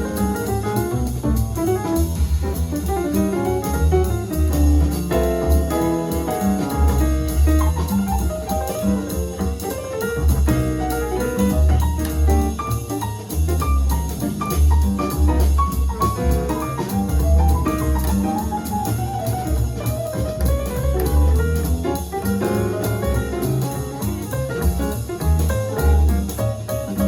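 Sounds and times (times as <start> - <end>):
drum kit with cymbals: 0.0 - 27.0
piano: 0.0 - 27.0
upright bass line: 0.0 - 27.0.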